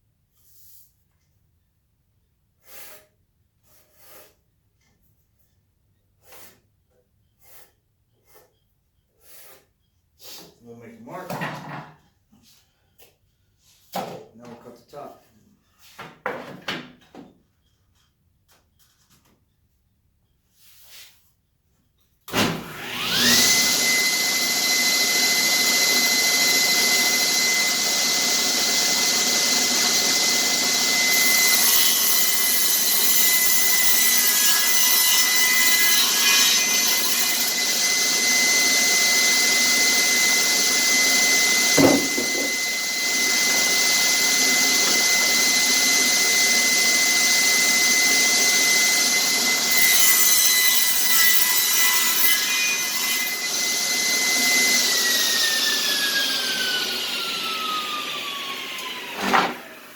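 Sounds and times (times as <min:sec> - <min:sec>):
electric saw cutting wood: 0:22.3 - 0:59.9
short knock: 0:41.8 - 0:42.6.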